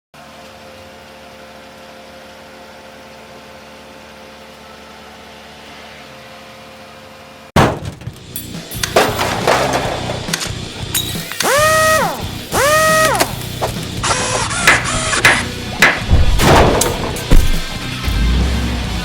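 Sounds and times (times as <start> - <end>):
loud crashing: 8.9 - 10.4, 16.0 - 18.1
machine hum: 9.0 - 19.0.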